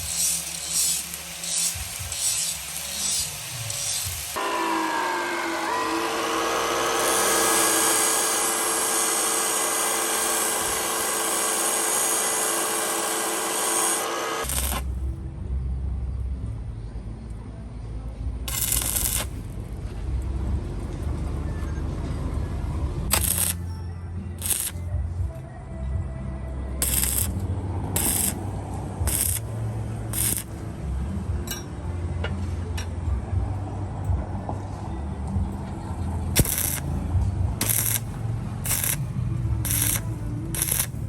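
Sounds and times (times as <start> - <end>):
electric power tool running: 0.0 - 14.9.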